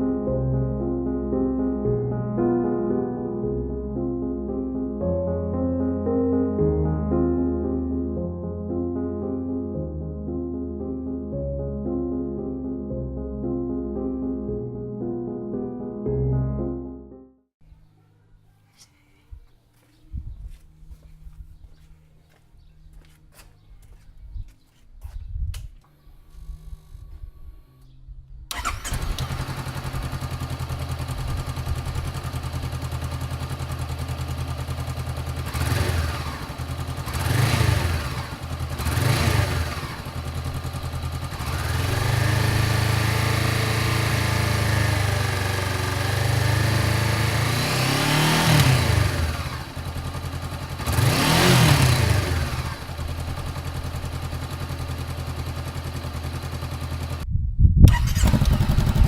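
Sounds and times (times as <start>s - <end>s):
motorcycle engine idling and revving: 28.5s - 57.3s, 57.9s - 59.0s.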